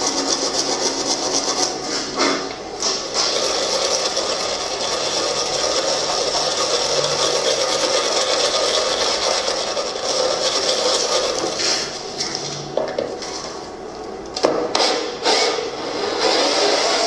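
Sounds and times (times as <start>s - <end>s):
abrasive scraping and rubbing: 0.0s - 12.6s.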